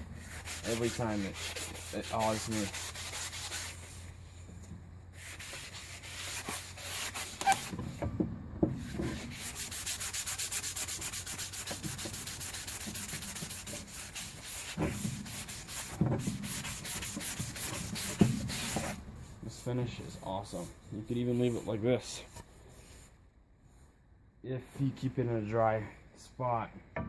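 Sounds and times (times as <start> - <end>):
sanding sponge rubbing wood: 0.2 - 4.0, 5.2 - 7.7, 8.8 - 19.6.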